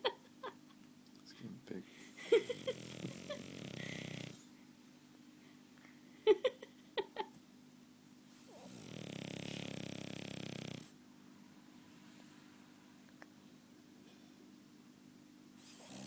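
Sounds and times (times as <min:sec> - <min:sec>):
dog snoring: 0:02.3 - 0:04.5, 0:08.4 - 0:11.0, 0:15.6 - 0:16.0.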